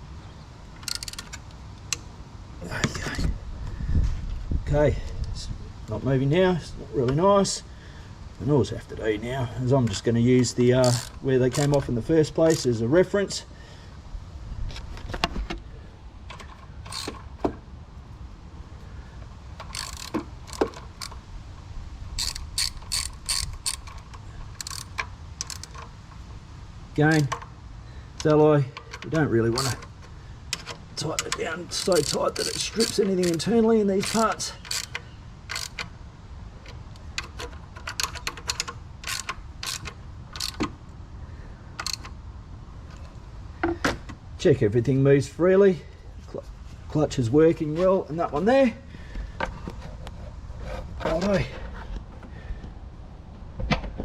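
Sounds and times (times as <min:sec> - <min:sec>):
ratchet wrench clicking: 0:00.8 - 0:02.0, 0:10.7 - 0:12.7, 0:16.4 - 0:17.3, 0:19.6 - 0:21.2, 0:22.1 - 0:25.9, 0:27.0 - 0:27.5, 0:28.2 - 0:29.9, 0:30.5 - 0:35.9, 0:37.1 - 0:40.6, 0:41.8 - 0:42.1.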